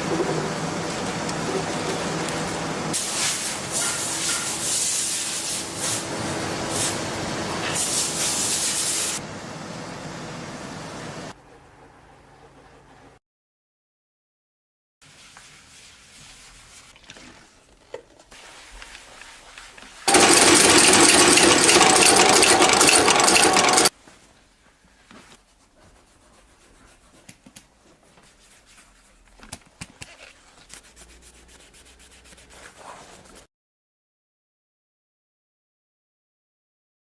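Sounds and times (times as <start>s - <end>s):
rough abrasive machine noise: 20.1s - 23.9s.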